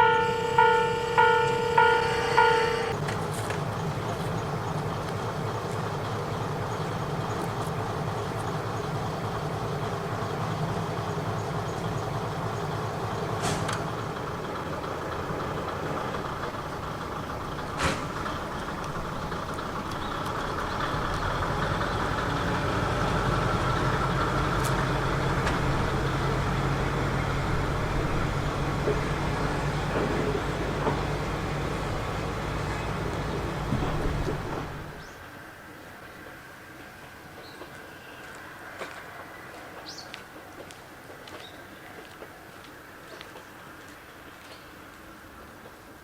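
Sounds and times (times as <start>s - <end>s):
diesel engine idling: 0.0s - 35.4s.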